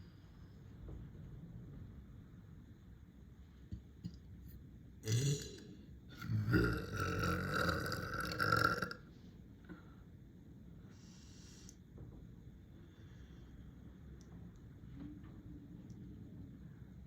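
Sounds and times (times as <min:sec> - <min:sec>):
person burping: 0:05.0 - 0:09.0.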